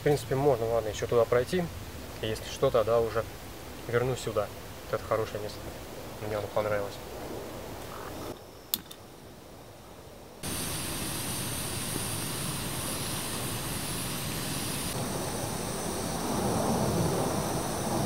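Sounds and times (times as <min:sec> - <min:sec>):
sharp click: 0:08.7 - 0:09.0
jet aircraft passing overhead: 0:10.4 - 0:18.0.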